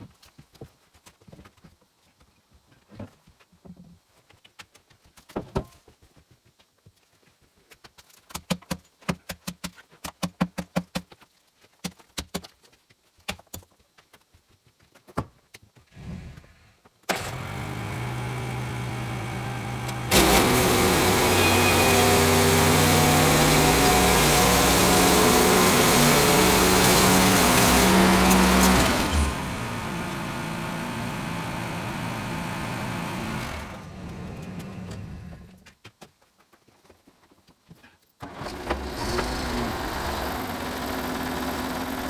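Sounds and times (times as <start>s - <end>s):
small gasoline engine running: 17.1s - 35.6s, 38.2s - 42.0s.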